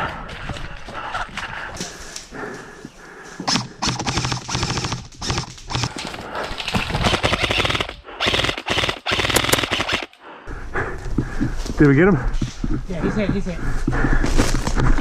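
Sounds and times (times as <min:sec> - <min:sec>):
airsoft rifle full-auto bursts: 0:03.5 - 0:05.9, 0:07.0 - 0:10.2.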